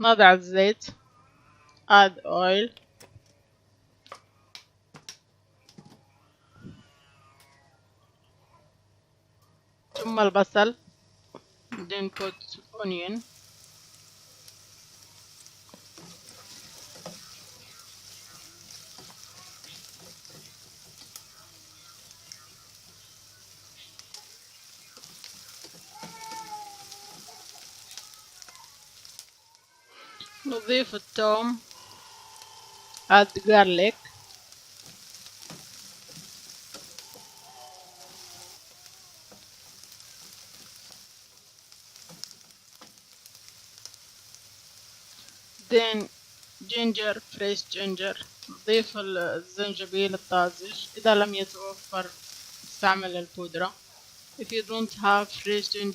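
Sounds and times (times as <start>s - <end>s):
onions sizzling in oil: 9.9s - 55.9s
stirring clicks and scrapes: 33.9s - 38.6s.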